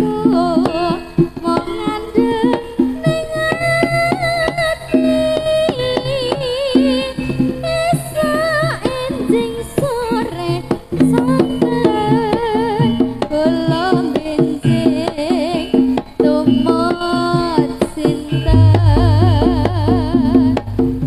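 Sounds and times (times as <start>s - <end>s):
hand drums beating: 0.1s - 21.0s
person singing with vibrato: 17.6s - 20.8s.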